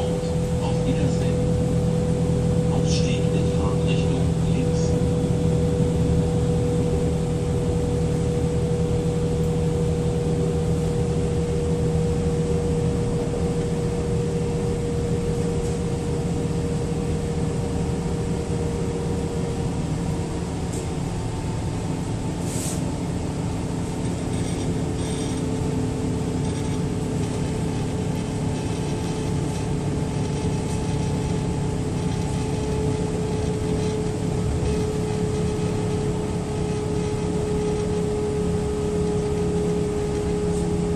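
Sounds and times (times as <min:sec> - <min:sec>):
low train rumble: 0:00.0 - 0:40.9
train electrical whine: 0:00.0 - 0:40.9
short sharp hiss: 0:22.4 - 0:22.8.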